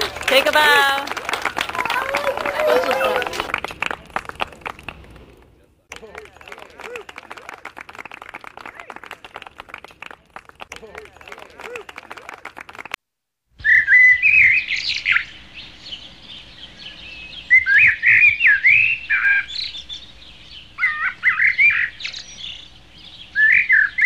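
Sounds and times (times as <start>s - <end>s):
songbird chirping and whistling: 13.6s - 24.0s.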